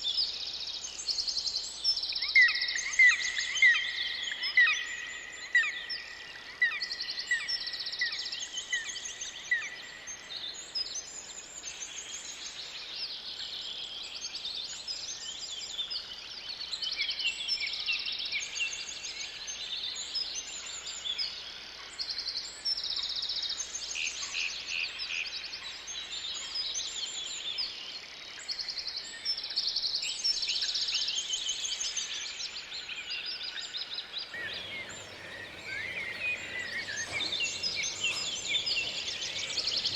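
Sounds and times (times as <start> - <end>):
songbirds singing: 33.9 - 39.9
faint steady hiss: 34.3 - 39.9.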